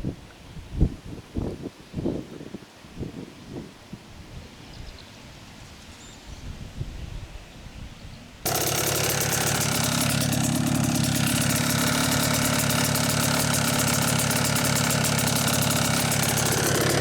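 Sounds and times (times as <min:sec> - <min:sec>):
engine idling with rapid pulsing: 0:08.5 - 0:17.0.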